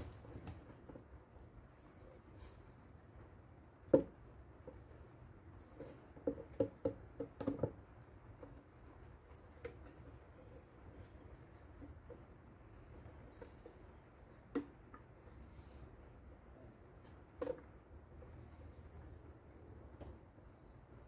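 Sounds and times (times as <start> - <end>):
knocks on a workbench: 3.9 - 4.2
light knocks and taps: 3.9 - 5.0, 5.8 - 10.5, 11.6 - 15.2, 19.8 - 20.4.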